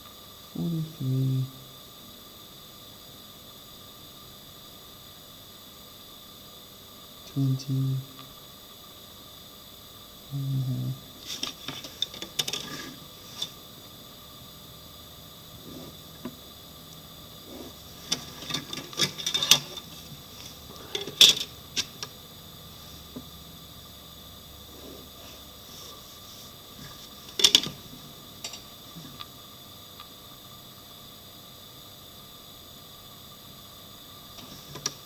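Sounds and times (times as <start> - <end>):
faint steady hum: 0.0 - 35.0
drawing instruments tapping and scraping: 11.2 - 13.8, 15.6 - 16.4, 17.4 - 22.2, 24.8 - 29.3, 34.4 - 35.0.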